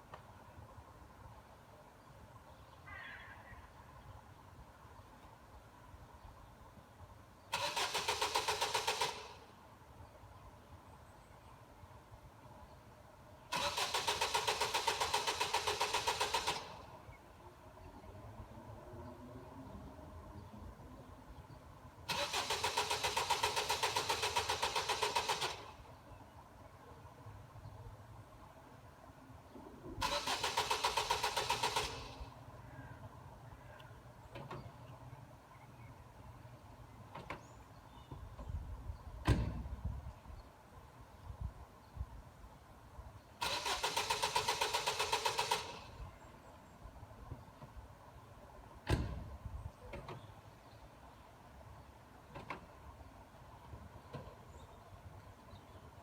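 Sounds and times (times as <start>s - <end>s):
car engine cranking on starter: 7.5s - 9.5s, 13.5s - 16.9s, 22.0s - 26.0s, 30.0s - 32.4s, 43.4s - 46.2s
sharp clicks: 7.5s - 9.5s, 13.5s - 16.9s, 22.1s - 25.8s, 30.0s - 32.3s, 43.4s - 46.0s.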